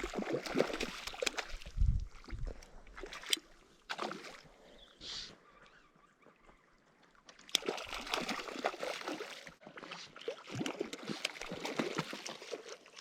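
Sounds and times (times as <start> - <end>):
fish splashing in water: 0.0 - 2.3, 7.4 - 13.0.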